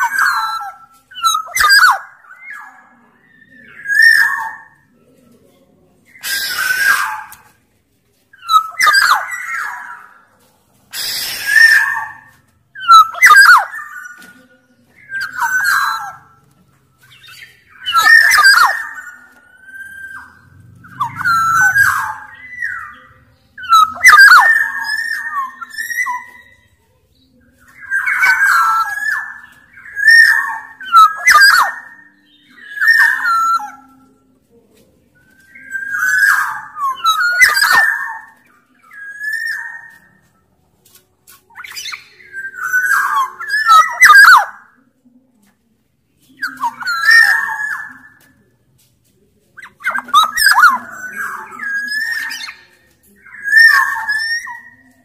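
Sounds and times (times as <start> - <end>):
oriole calling: 6.0 - 7.6, 15.0 - 26.8, 35.2 - 40.2, 49.6 - 54.9.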